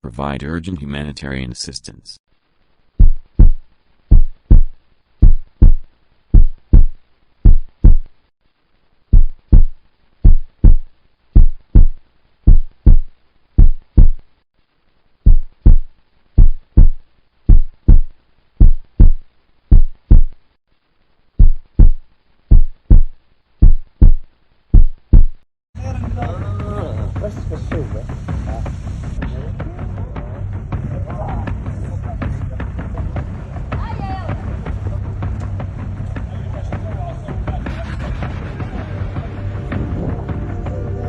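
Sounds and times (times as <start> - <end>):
heartbeat thumps: 3.0 - 8.1, 9.1 - 14.2, 15.2 - 20.4, 21.4 - 25.4.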